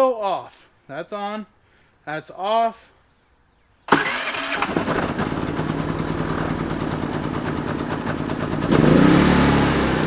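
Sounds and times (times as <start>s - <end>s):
generator engine running: 3.9s - 10.0s.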